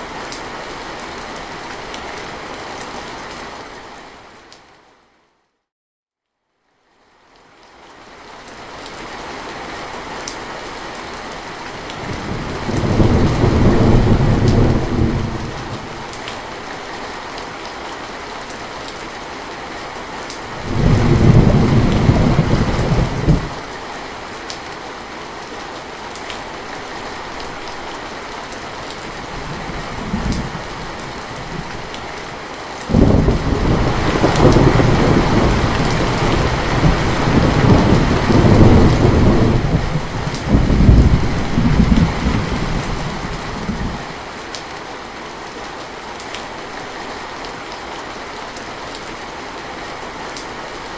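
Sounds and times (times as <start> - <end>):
steady rainfall: 0.0 - 5.3, 6.6 - 50.9
rolling thunder: 12.0 - 16.1, 20.6 - 23.6, 29.3 - 32.0, 32.9 - 44.1.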